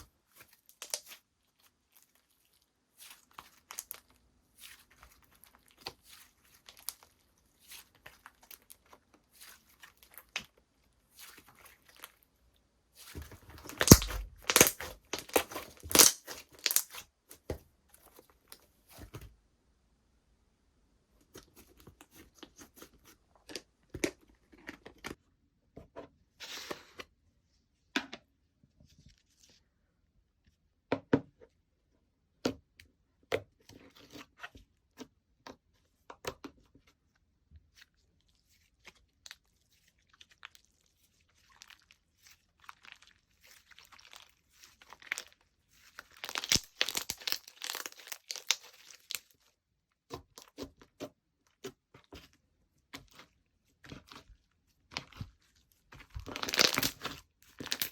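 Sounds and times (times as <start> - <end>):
slime squishing with pops: 0.6 - 1.2, 13.2 - 17.5, 41.3 - 57.9
slime crackling: 13.4 - 17.0, 42.5 - 49.4, 56.0 - 57.9.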